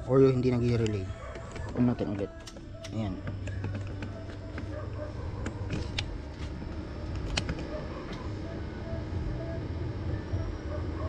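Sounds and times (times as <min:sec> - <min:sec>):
low background rumble: 0:02.7 - 0:11.0.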